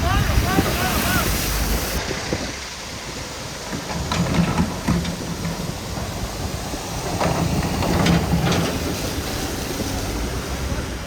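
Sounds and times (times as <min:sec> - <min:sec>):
heavy engine rumbling: 0:00.0 - 0:11.0
sharp knocks and clatters: 0:03.7 - 0:09.3.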